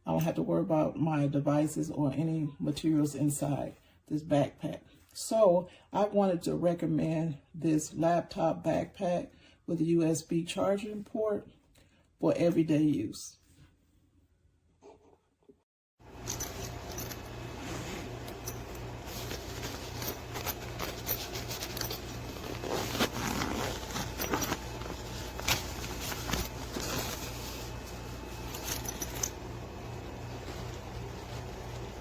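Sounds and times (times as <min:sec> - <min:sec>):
zipper runs: 0:16.1 - 0:29.4
backpack rustling: 0:16.1 - 0:32.0
steady low hum: 0:16.1 - 0:32.0.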